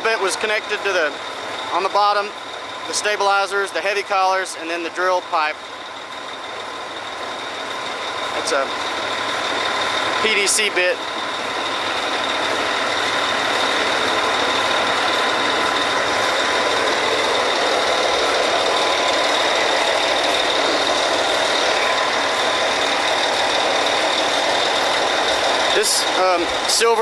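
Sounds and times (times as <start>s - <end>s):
drilling rig engine din: 0.0s - 27.0s
high-pitched whines: 0.0s - 27.0s.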